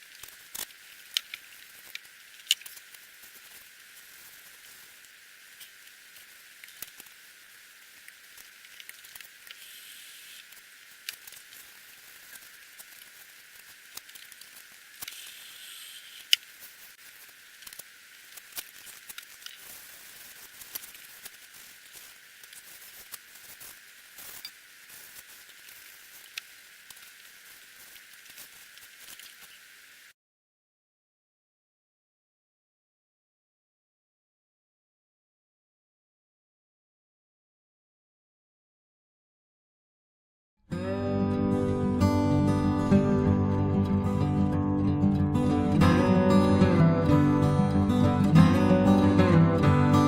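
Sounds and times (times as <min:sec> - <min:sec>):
steady hiss: 0:00.0 - 0:30.2.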